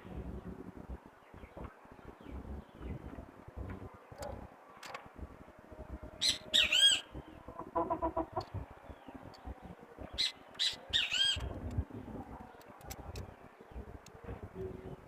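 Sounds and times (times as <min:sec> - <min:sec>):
low rapid clucking: 0:07.5 - 0:08.7.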